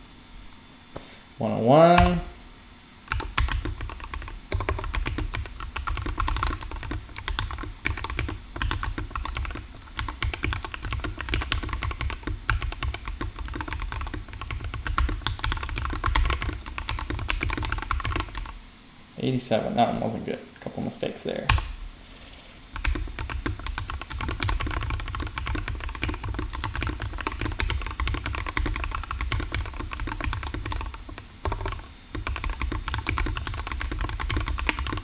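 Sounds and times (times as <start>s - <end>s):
fast mechanical keyboard typing: 3.1s - 18.6s, 22.7s - 35.0s.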